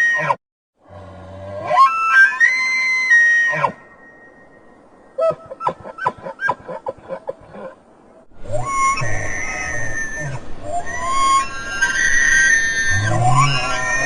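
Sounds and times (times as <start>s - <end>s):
elk chuckles: 5.3s - 7.8s
elk bugling: 8.4s - 14.0s.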